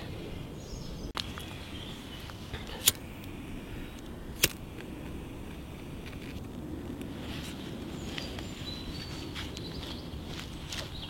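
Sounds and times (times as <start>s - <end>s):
lighter clicks: 2.8s - 5.2s.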